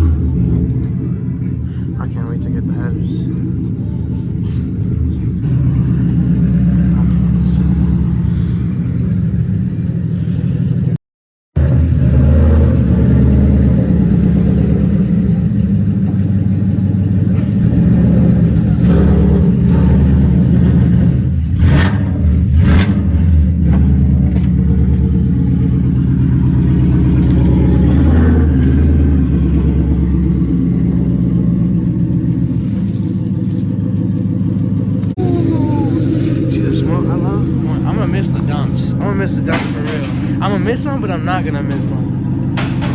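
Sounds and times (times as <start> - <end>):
car engine running loud: 0.0 - 11.0, 11.6 - 42.9
exhaust cracks: 4.5 - 11.0, 11.6 - 42.9.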